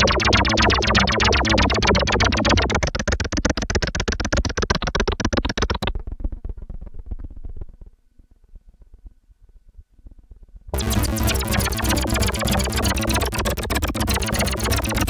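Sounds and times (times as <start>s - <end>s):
held synth bass tone: 0.0s - 2.9s, 10.8s - 15.0s
synthesizer pulsing notes: 0.0s - 2.9s, 10.8s - 15.0s.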